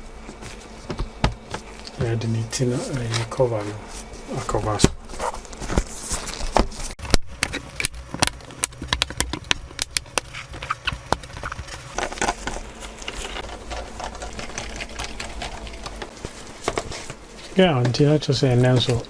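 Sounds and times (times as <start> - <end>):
clicks and taps on plastic cover: 7.0 - 12.0.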